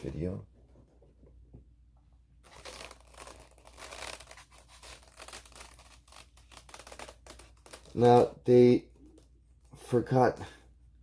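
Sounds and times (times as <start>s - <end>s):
packaging crinkling: 2.4s - 8.0s.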